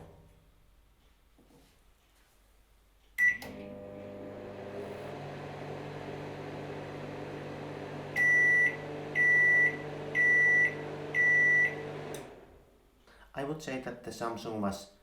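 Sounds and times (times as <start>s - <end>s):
microwave start beep: 3.2s - 12.4s
microwave humming: 3.2s - 12.8s.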